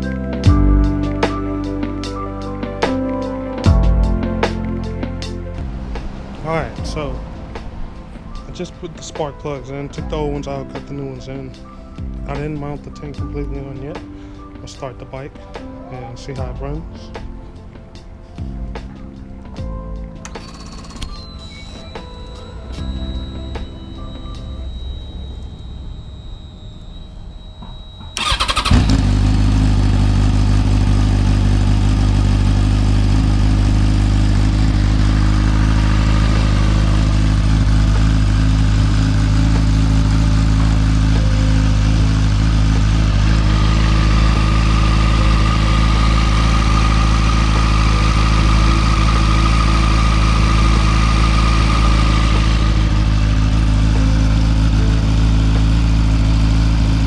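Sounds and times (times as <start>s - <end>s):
motorcycle engine starting and idling: 20.3s - 21.7s, 27.6s - 57.0s.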